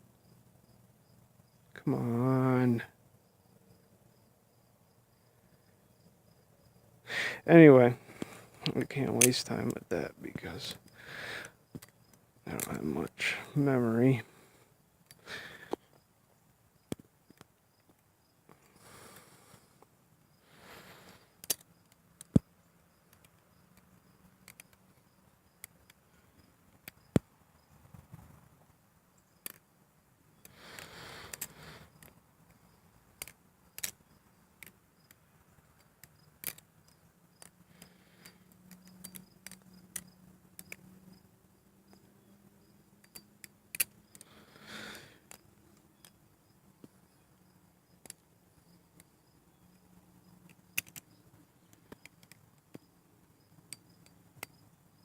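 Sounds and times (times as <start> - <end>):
butterfly knife metallic clicks: 21.4 - 22.4, 43.0 - 44.3, 50.5 - 52.9.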